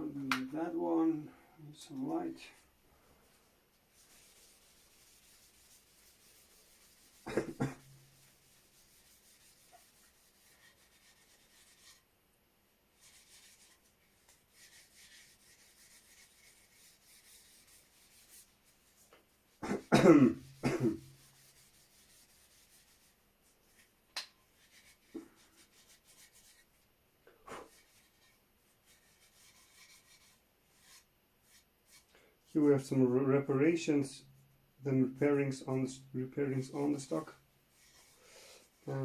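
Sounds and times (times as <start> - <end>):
steel wool rubbing on wood: 3.9 - 12.1, 13.0 - 19.0, 20.5 - 26.7, 27.5 - 32.7, 36.6 - 39.0
man coughing: 7.3 - 7.8, 19.6 - 21.0.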